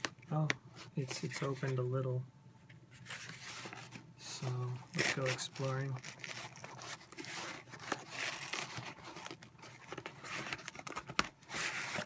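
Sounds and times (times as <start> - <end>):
packaging tearing and crinkling: 4.8 - 12.0.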